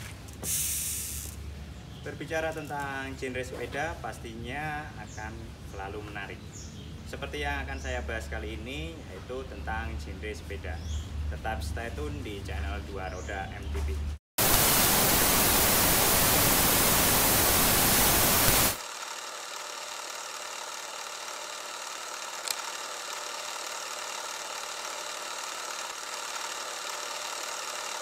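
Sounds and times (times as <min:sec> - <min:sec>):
loud static hiss: 0:00.0 - 0:01.5, 0:14.4 - 0:18.8
sharp click: 0:22.4 - 0:22.8.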